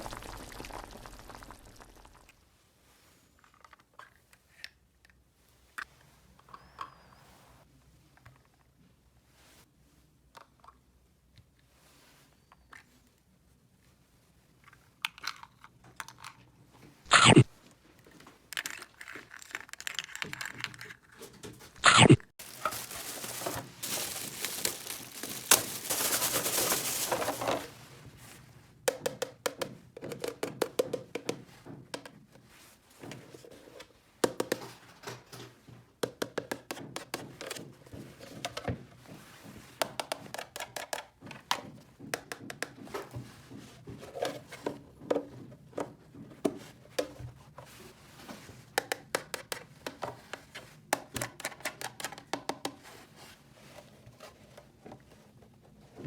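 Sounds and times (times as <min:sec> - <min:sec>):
plastic toy pieces clicking: 0:18.6 - 0:21.0
packaging crinkling: 0:21.8 - 0:27.8.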